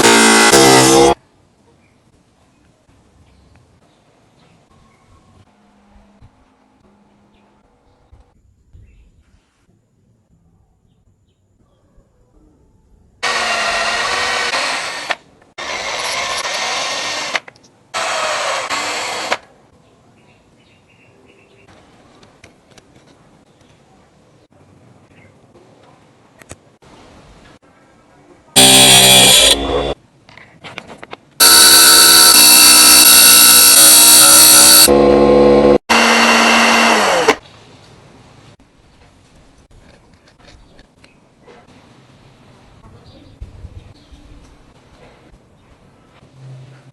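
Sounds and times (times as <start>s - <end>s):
handheld power tool whining: 0.0s - 1.2s, 13.2s - 17.4s, 18.0s - 19.4s, 28.6s - 30.0s, 31.4s - 37.4s.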